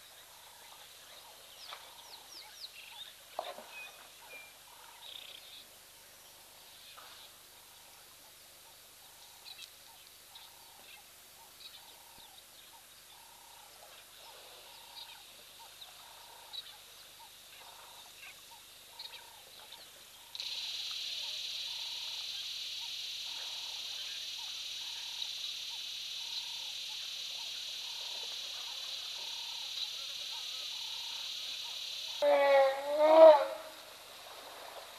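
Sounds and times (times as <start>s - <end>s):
high-pitched insect buzz: 20.3s - 33.9s.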